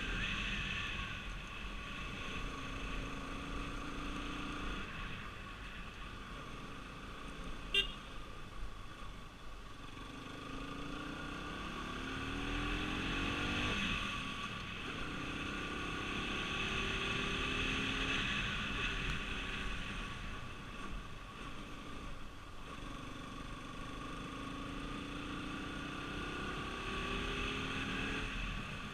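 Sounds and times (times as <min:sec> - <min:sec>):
road and engine noise: 0:00.0 - 0:28.9.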